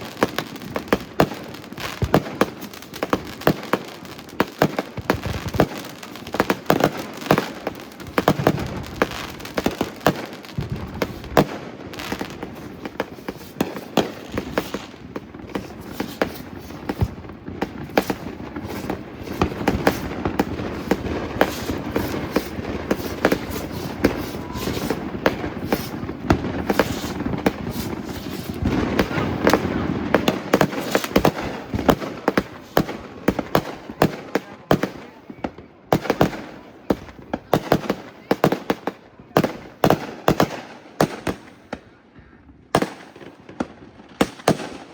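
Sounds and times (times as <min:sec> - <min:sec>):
fireworks bangs and crackles: 0:00.0 - 0:44.9.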